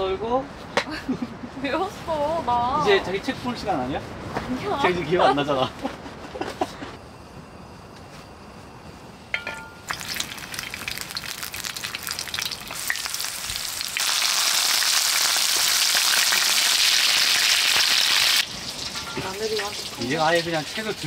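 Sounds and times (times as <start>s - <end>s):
food sizzling in hot oil: 9.3s - 21.0s.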